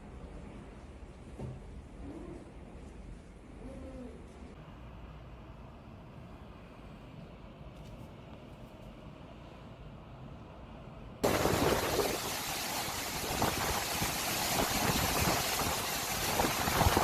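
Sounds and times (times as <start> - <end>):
storm wind and rain: 9.1 - 17.0.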